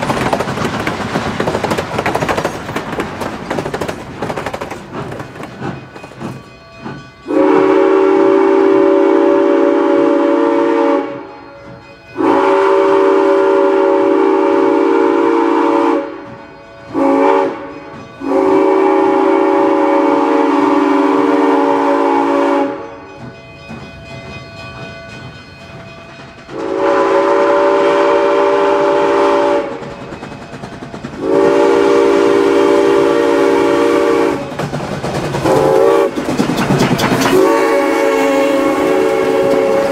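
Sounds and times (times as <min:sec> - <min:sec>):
steam whistle chord blasts: 0:07.3 - 0:11.6, 0:12.2 - 0:16.3, 0:16.9 - 0:23.0, 0:26.5 - 0:29.8, 0:31.2 - 0:34.5, 0:35.5 - 0:36.2, 0:37.3 - 0:39.9.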